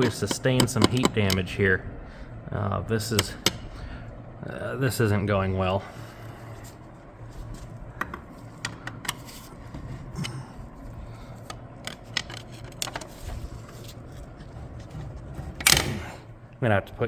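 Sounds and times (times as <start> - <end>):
faint low hum: 0.0 - 17.0
metal parts clinking together: 15.6 - 16.1.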